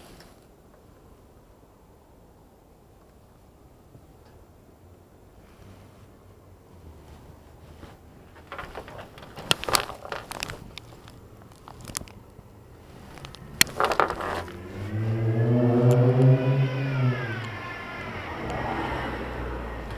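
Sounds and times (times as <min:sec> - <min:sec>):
fabric rubbing on microphone: 0:06.7 - 0:12.0, 0:12.8 - 0:19.8
low droning tone: 0:13.1 - 0:19.9.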